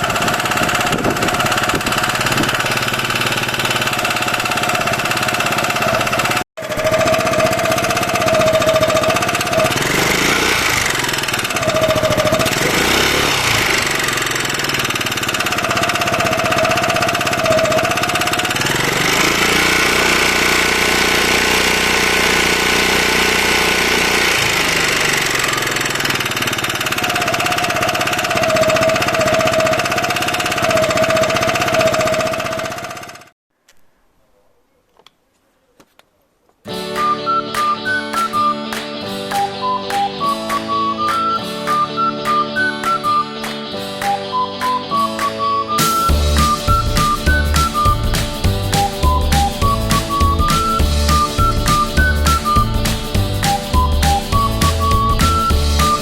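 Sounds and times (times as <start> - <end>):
scooter engine revving and idling: 0.0 - 33.4, 45.8 - 56.0.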